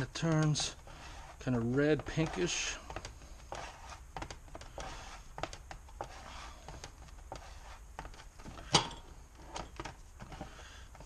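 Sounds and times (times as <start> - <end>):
plastic spatula scraping: 0.0 - 8.7.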